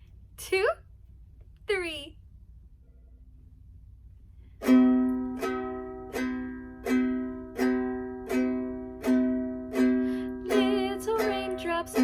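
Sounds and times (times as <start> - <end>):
ukulele strumming: 4.6 - 12.0.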